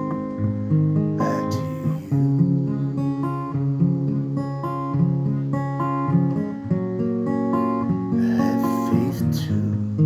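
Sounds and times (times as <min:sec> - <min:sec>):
acoustic guitar strumming chords: 0:00.0 - 0:10.0.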